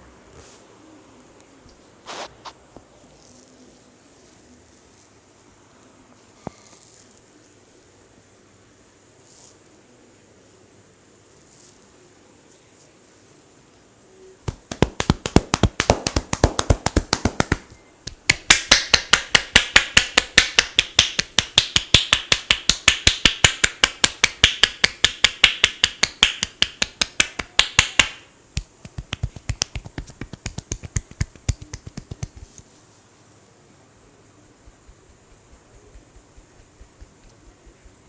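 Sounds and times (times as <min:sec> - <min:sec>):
hands tapping and slapping head: 0:14.5 - 0:32.7.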